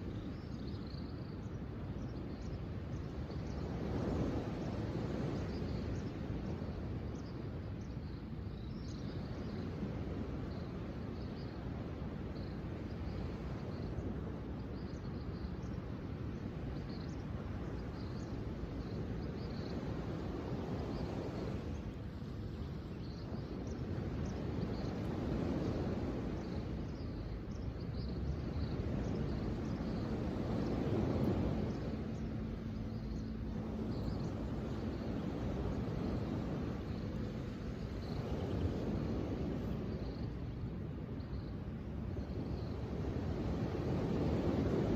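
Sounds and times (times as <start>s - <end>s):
ocean waves washing in: 16.8s - 44.9s.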